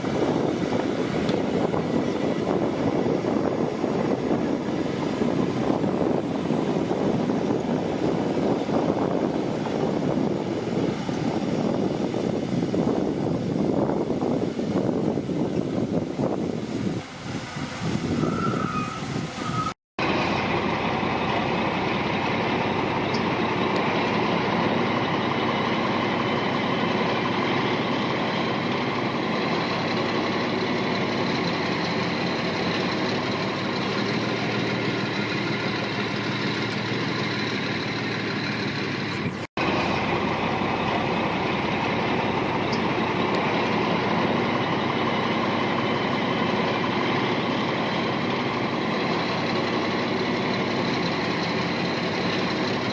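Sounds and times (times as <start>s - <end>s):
heavy machinery diesel engine running: 0.0s - 18.2s, 19.1s - 52.9s.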